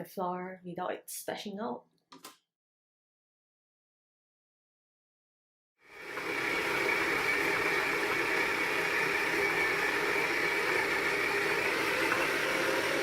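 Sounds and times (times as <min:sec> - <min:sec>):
stand mixer motor whirring: 0:05.9 - 0:13.0.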